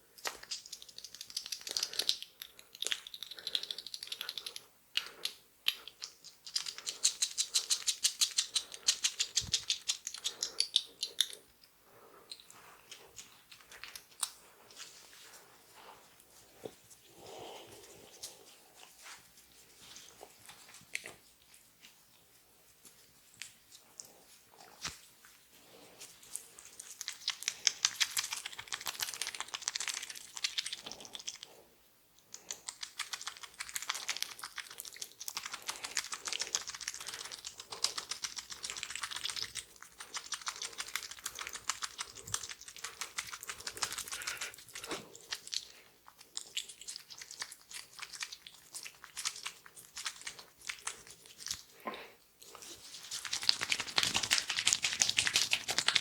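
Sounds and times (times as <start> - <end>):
wet crackling of massaged skin: 17.6 - 31.5, 32.3 - 51.8, 52.4 - 56.0.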